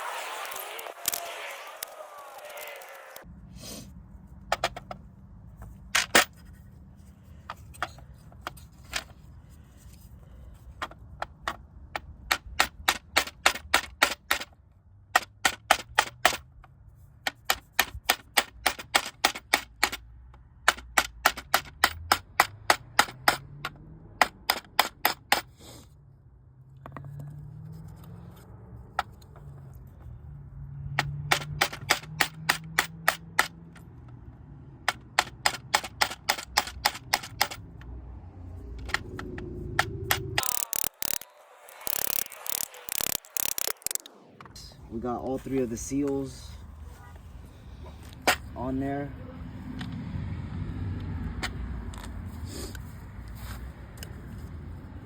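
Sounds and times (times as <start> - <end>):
ratchet wrench clicking: 40.4 - 44.1.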